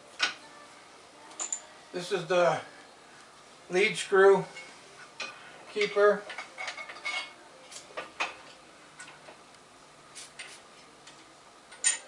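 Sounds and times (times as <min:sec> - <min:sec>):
metal parts clicking and clinking: 0:01.4 - 0:01.6, 0:11.7 - 0:12.0.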